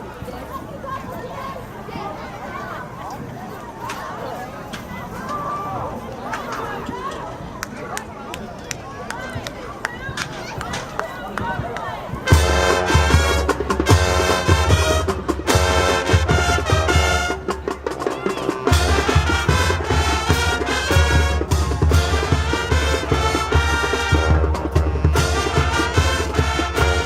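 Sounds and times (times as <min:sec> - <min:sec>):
marching band brass and percussion: 0:11.4 - 0:27.0.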